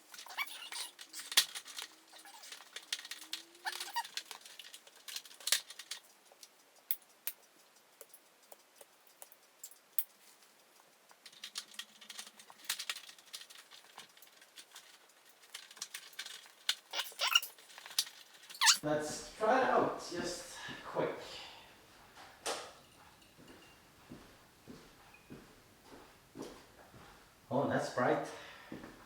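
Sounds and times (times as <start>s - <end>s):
short squeak: 0.2s - 1.2s, 2.1s - 2.6s, 3.6s - 4.2s, 16.9s - 17.5s, 18.5s - 18.8s.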